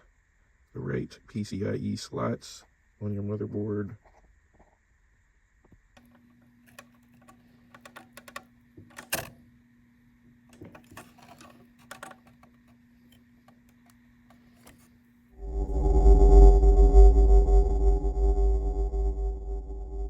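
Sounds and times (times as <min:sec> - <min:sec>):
faint steady hum: 0:00.0 - 0:20.0
computer hardware clicks and taps: 0:06.0 - 0:09.4.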